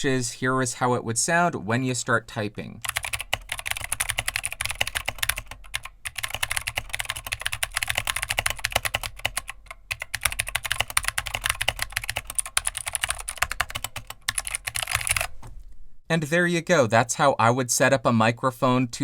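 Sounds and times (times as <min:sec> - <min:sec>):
mechanical keyboard typing: 0:02.8 - 0:15.3.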